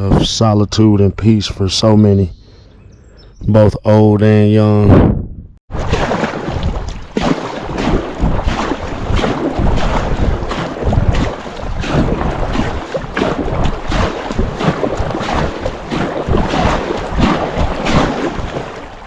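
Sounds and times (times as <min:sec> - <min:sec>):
wind buffeting microphone: 0:04.7 - 0:19.0
paddle strokes splashing: 0:05.7 - 0:19.0.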